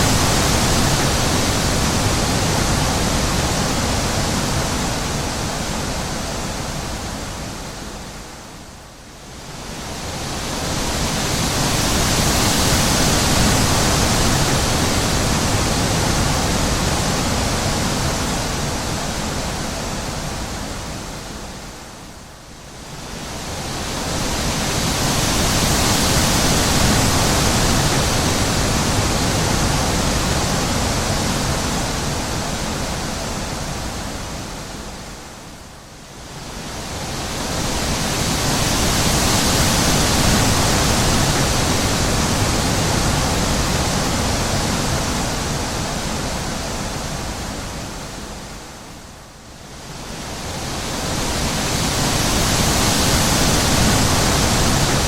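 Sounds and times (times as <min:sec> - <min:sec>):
wind blowing in gusts: 0:00.0 - 0:55.0.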